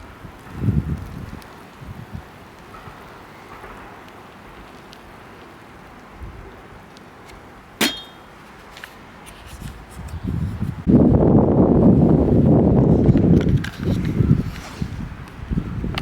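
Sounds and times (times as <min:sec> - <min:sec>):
outdoor background noise: 0:00.0 - 0:16.0
sharp metallic clink: 0:07.8 - 0:08.3.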